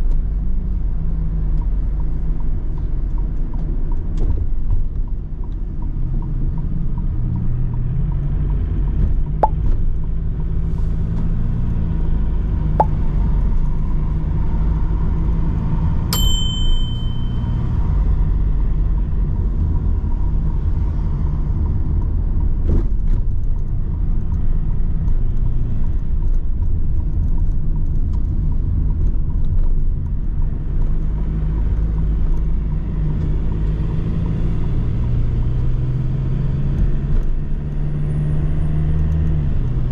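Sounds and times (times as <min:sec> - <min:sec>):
van engine and road noise: 0:00.0 - 0:39.9
short high chime: 0:16.2 - 0:17.8.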